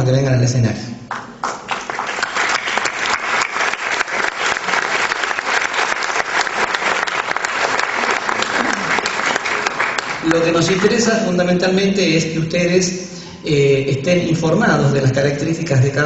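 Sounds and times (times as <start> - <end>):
audience applauding: 1.1 - 11.2.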